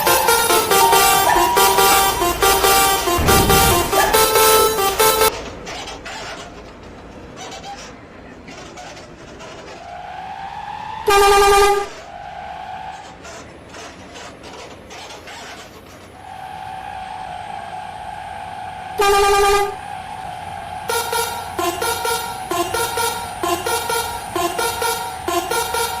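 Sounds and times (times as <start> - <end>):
loud bus horn blasts: 0.0 - 5.3, 11.0 - 12.0, 18.9 - 19.9, 20.9 - 26.0
thin held horn tone: 0.0 - 5.3, 20.9 - 26.0.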